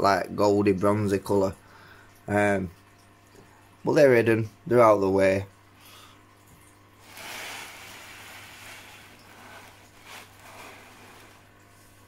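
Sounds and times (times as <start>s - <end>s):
rustling of small parts handled: 7.0s - 11.6s.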